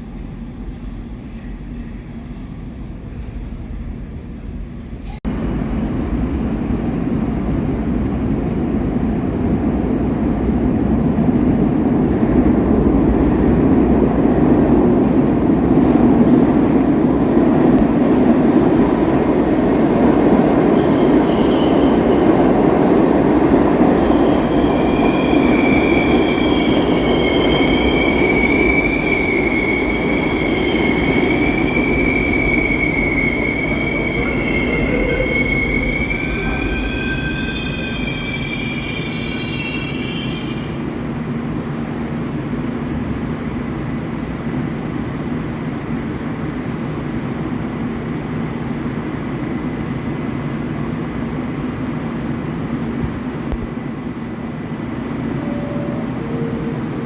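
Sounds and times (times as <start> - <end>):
high wheel squeal: 24.0 - 40.8.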